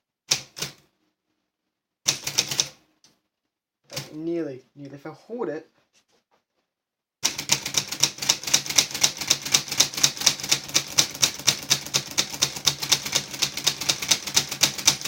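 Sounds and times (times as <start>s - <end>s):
typewriter keys clacking: 7.3s - 15.0s.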